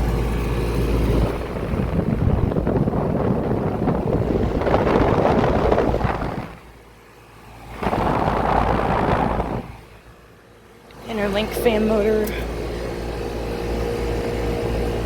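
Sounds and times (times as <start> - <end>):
wind buffeting microphone: 0.9 - 6.8, 7.6 - 10.0.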